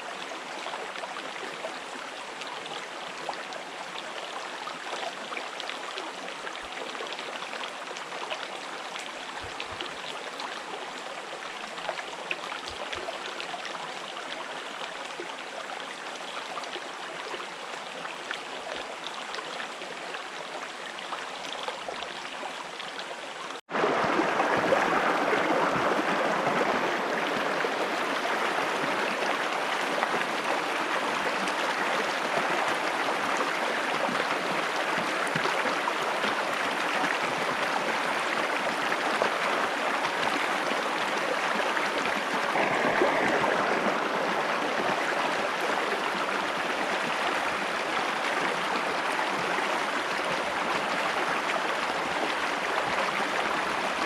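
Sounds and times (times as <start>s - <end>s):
river water flowing: 0.0s - 54.0s
loud rush of water: 22.6s - 54.0s.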